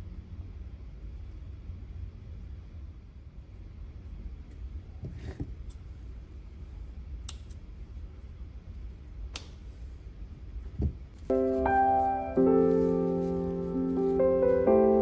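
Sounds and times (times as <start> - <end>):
low background rumble: 0.0 - 15.0
gentle piano music: 11.2 - 15.0.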